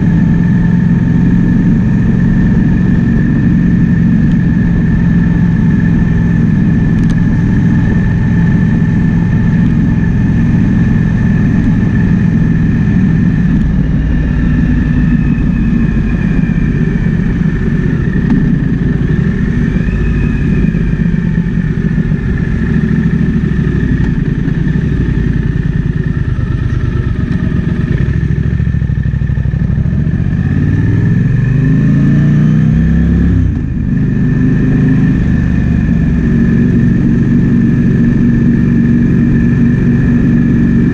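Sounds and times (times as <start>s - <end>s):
wind noise: 0.0s - 29.4s
motorcycle engine running: 0.0s - 40.9s.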